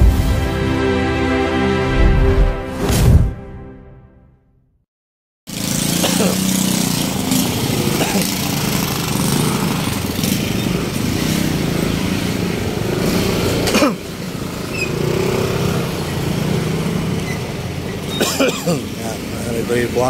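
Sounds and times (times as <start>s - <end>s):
motorcycle passing close: 5.5s - 20.0s
street traffic: 5.5s - 20.0s.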